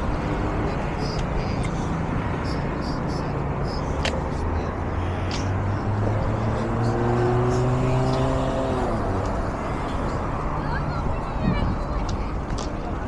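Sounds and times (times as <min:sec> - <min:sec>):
vehicle engine passing by: 0:01.8 - 0:11.0.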